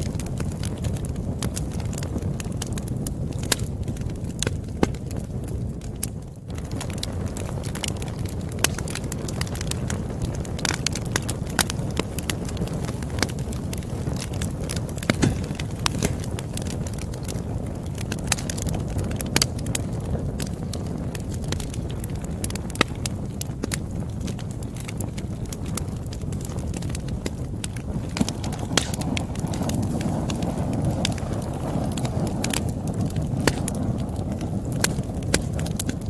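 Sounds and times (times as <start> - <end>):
fire crackling and popping: 0.0 - 36.0
low rush of flames: 0.0 - 36.0.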